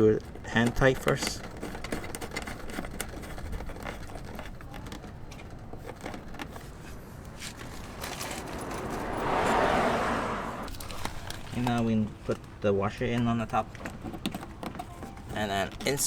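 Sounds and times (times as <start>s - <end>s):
rushing noise: 7.3s - 10.7s.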